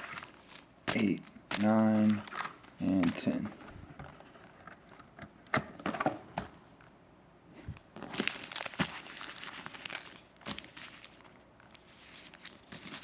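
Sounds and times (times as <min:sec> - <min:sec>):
foil wrappers crinkling and tearing: 0:00.0 - 0:03.5, 0:08.0 - 0:13.0.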